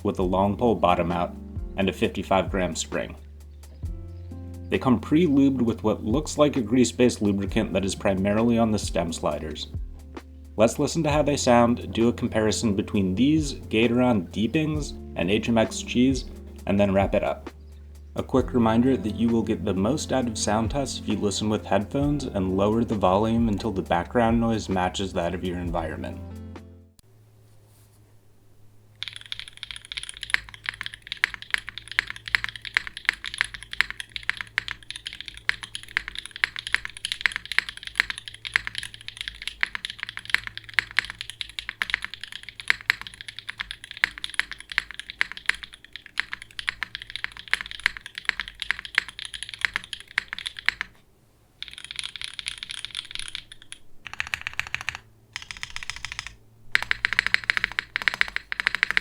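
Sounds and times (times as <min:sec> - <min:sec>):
mechanical keyboard typing: 0:29.0 - 0:51.0, 0:51.6 - 0:59.0.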